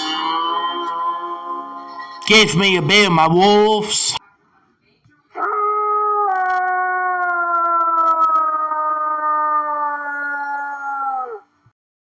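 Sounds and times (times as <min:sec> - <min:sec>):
dog howling: 0:05.4 - 0:11.5.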